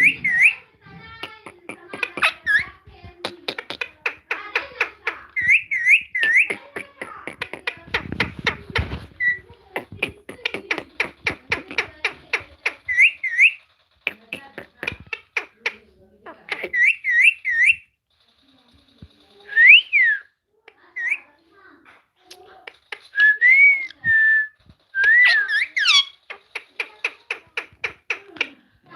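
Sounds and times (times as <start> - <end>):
parrot whistling: 0.0 - 0.6, 5.4 - 6.6, 19.5 - 20.3, 23.1 - 26.2
rapid sharp clicks: 0.0 - 15.8, 16.6 - 19.8, 21.9 - 24.0, 24.6 - 28.7.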